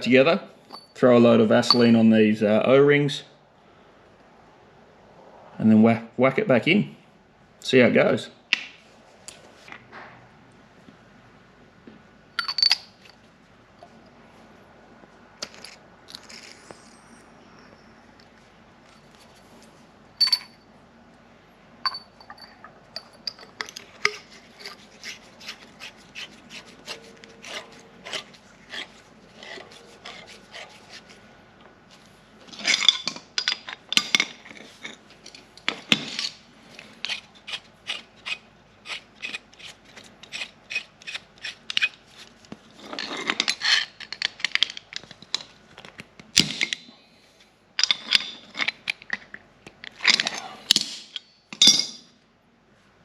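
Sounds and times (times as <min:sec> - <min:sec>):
scraping rubs: 0:23.8 - 0:31.2.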